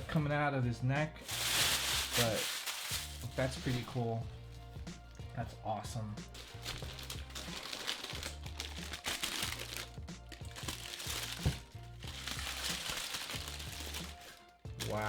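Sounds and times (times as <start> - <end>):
background music with bass line: 0.0 - 15.0
packaging wrap crinkling: 1.2 - 4.0, 6.3 - 15.0.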